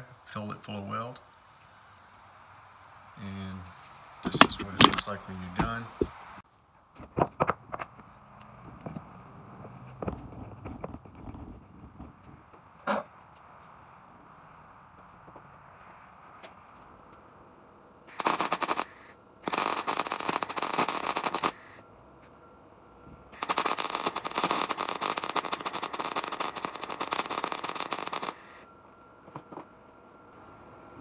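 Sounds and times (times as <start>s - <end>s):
welder arcing with crackle: 18.1s - 21.8s, 23.4s - 28.7s.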